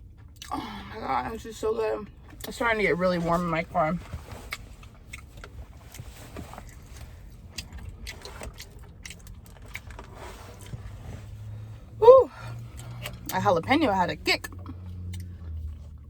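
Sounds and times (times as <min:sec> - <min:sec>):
chewing food: 0:00.0 - 0:00.9, 0:03.2 - 0:11.4, 0:12.6 - 0:13.4, 0:14.4 - 0:16.0
low steady hum: 0:00.0 - 0:16.0.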